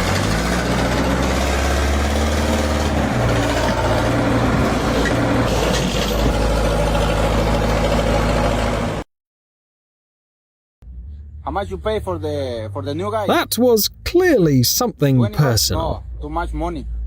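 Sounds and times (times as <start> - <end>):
heavy engine running: 0.0 - 9.0.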